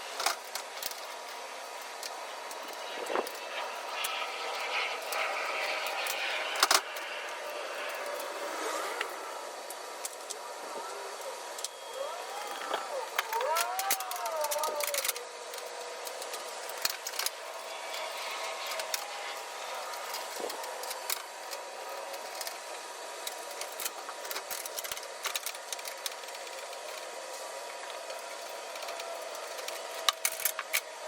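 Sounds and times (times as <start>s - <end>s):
steady background hum: 0.0s - 31.0s
metal parts clicking and rattling: 0.1s - 1.4s, 13.1s - 19.1s, 23.2s - 27.1s, 28.2s - 30.9s.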